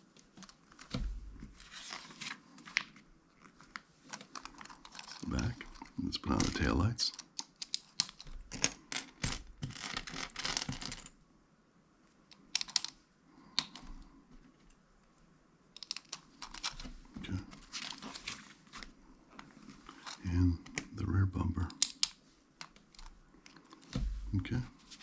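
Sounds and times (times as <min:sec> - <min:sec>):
plastic toy bricks clicking: 0:07.1 - 0:09.1, 0:12.3 - 0:13.0, 0:15.8 - 0:16.8, 0:21.7 - 0:23.9.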